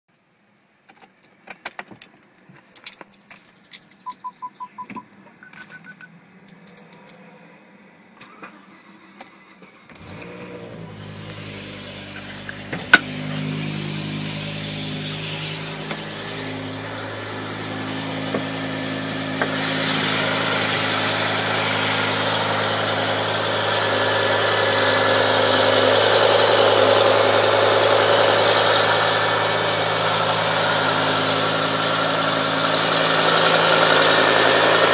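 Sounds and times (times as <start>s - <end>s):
car engine starting and idling: 3.9s - 34.9s
electronic beeping: 4.0s - 6.1s.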